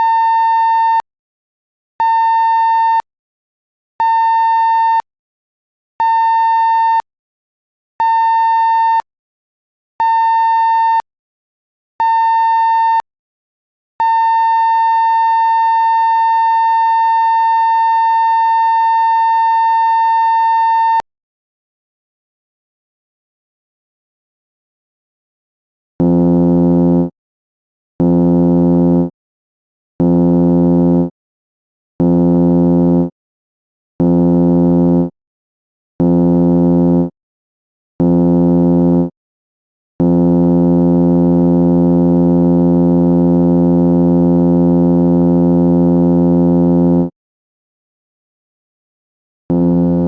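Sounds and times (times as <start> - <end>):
ship alarm horn blasts: 49.5 - 50.0.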